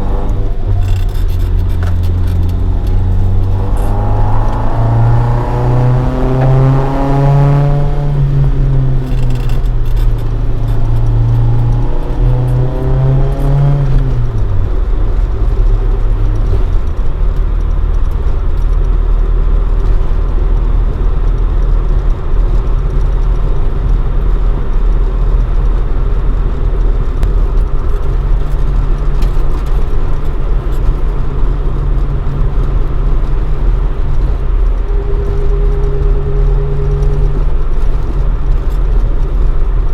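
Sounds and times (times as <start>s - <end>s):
car engine revs dropping: 0.0s - 16.8s.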